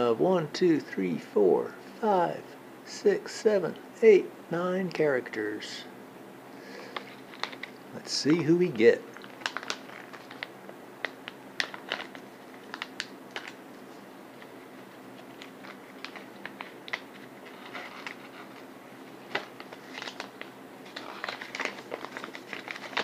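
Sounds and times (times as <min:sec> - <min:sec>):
packaging crinkling: 0:06.8 - 0:07.8, 0:09.1 - 0:23.0.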